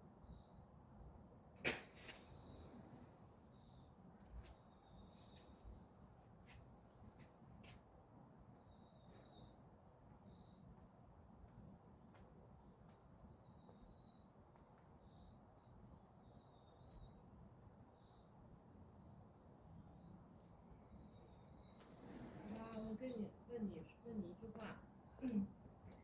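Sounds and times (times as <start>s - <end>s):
birds chirping: 8.4s - 26.0s.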